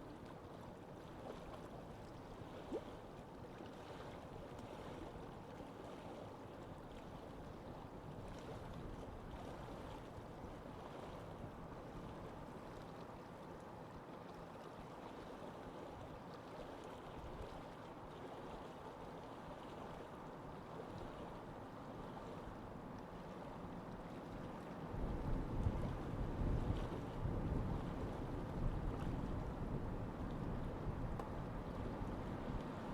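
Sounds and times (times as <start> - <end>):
moving water: 0.0 - 32.9
wind on microphone: 24.9 - 32.9.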